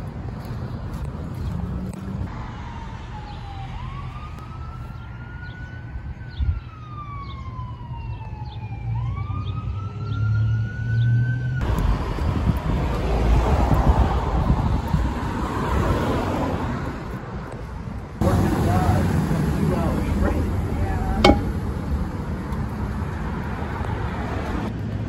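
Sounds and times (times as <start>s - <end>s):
traffic noise: 0.0s - 25.0s
wind: 0.0s - 25.0s
emergency siren wailing: 2.4s - 11.7s.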